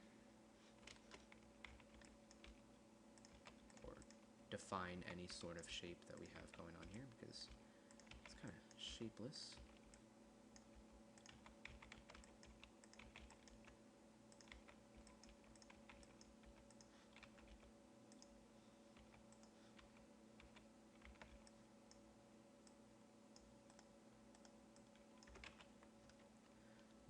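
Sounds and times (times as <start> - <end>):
low electrical hum: 0.0 - 27.0
keyboard keys clicking: 0.8 - 2.6, 3.2 - 4.2, 6.1 - 8.5, 10.6 - 18.3, 19.0 - 21.6, 23.4 - 26.3.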